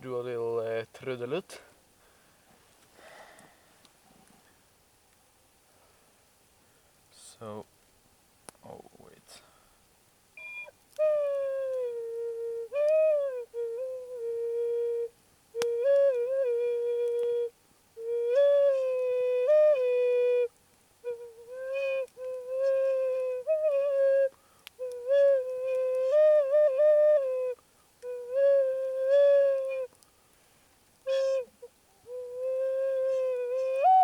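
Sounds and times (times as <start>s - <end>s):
flute playing a simple tune: 10.4s - 30.0s, 31.0s - 34.0s.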